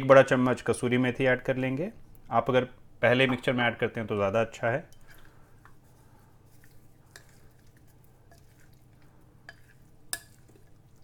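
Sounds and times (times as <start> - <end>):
soft stirring in a mixing bowl: 0.2 - 11.0.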